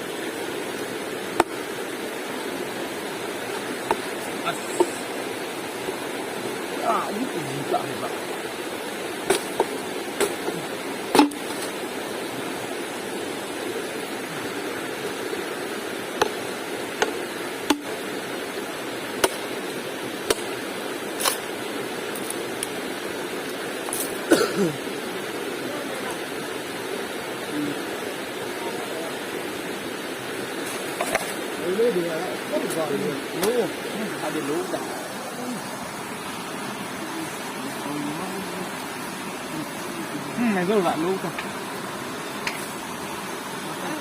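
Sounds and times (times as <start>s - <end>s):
river water rushing: 0.0s - 44.0s.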